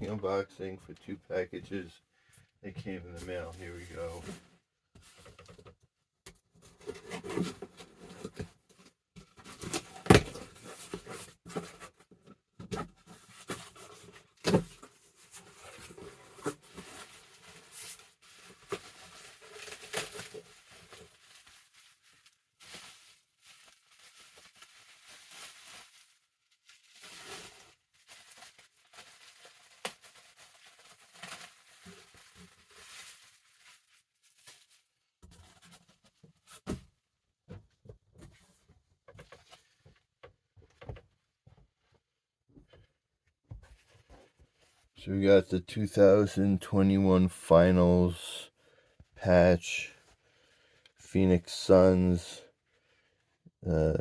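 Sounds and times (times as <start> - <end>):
packaging rustling and crinkling: 12.9 - 36.7.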